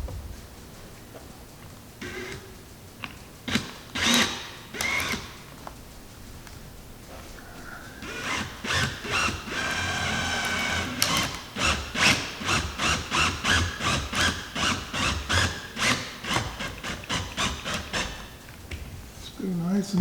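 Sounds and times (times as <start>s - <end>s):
screws squeaking and grating: 2.0s - 5.6s, 7.6s - 18.4s
screwdriver whirring: 2.0s - 5.8s, 8.0s - 18.6s.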